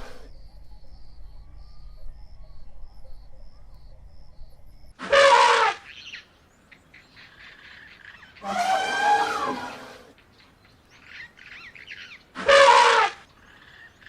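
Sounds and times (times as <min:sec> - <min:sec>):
elephant call: 0:05.0 - 0:06.2, 0:06.8 - 0:14.0.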